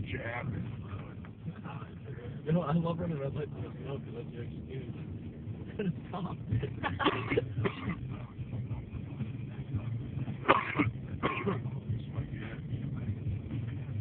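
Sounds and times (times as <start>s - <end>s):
steady low hum: 0.0s - 14.0s
person coughing: 5.8s - 8.0s, 10.5s - 11.7s.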